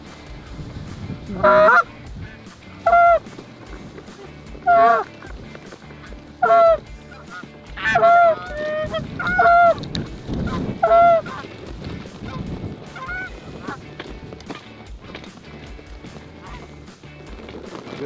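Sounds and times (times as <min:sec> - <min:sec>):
low rushing noise: 0:00.0 - 0:14.4
goose honking: 0:00.2 - 0:15.3, 0:16.0 - 0:16.9.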